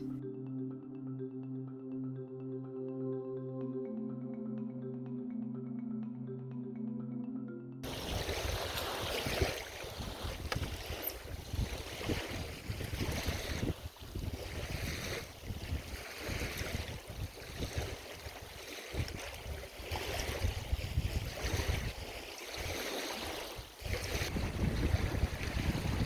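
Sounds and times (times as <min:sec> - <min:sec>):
wind buffeting microphone: 0:07.8 - 0:22.8, 0:23.6 - 0:26.0
lake waves washing: 0:07.8 - 0:26.0.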